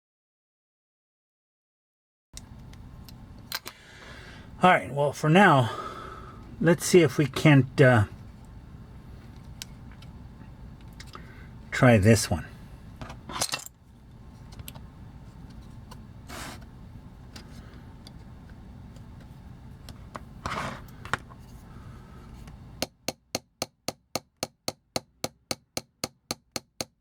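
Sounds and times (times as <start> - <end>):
low hum: 2.4 - 22.8
rapid hammer taps on metal punch: 22.8 - 27.0.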